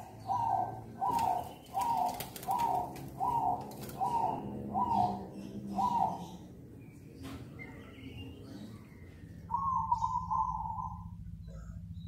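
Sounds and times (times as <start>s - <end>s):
dove cooing: 0.0s - 6.5s, 9.4s - 11.9s.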